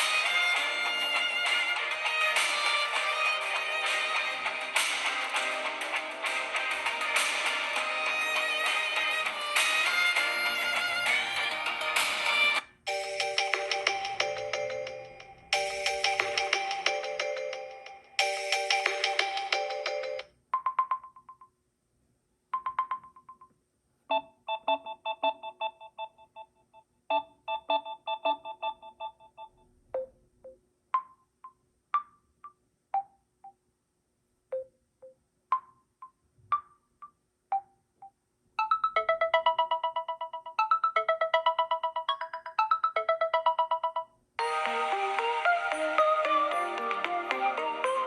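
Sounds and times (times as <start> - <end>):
electronic ringtone melodies: 0.0 - 21.5, 22.6 - 23.5, 24.1 - 33.6, 34.5 - 48.0.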